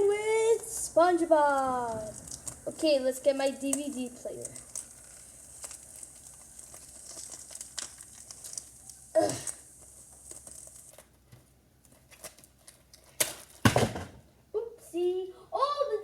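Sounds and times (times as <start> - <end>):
plastic packaging crinkling: 0.0 - 13.6.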